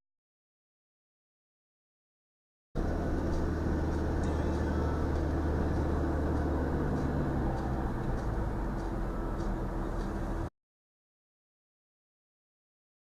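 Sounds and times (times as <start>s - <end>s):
engine and road drone: 2.8s - 10.5s
faint light ticks: 3.2s - 10.3s.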